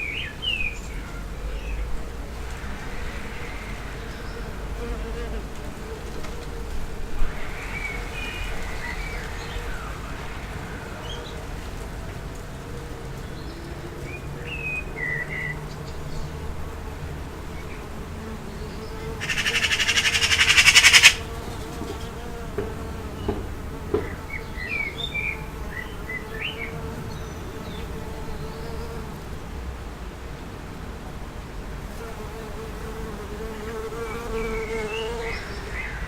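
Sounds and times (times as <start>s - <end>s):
distant traffic rumble: 0.0s - 32.0s
flying insect buzzing: 1.0s - 11.4s, 12.6s - 29.4s, 31.9s - 35.9s
birds chirping: 17.4s - 29.1s
faint knocks: 21.6s - 24.4s.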